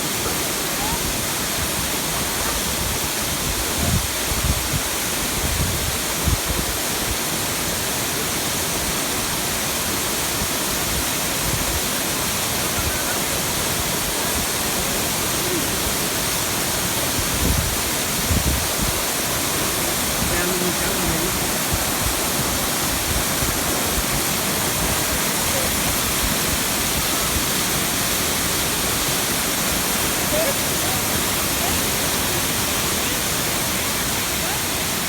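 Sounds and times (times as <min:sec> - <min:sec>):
waterfall rushing: 0:00.0 - 0:35.0.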